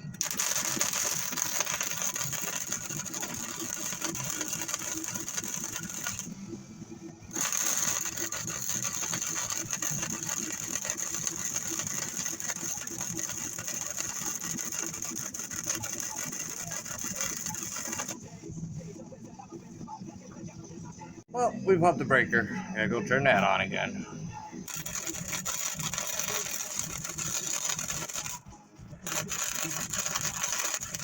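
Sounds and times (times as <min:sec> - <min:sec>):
arc welder crackling: 0:00.0 - 0:06.6, 0:07.2 - 0:18.3, 0:24.6 - 0:31.0.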